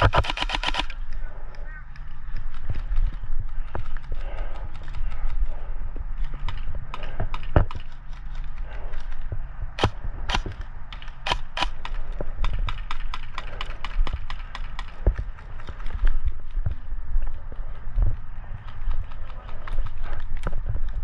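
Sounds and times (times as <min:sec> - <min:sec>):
airsoft guns firing: 0:00.0 - 0:01.0, 0:09.8 - 0:15.0.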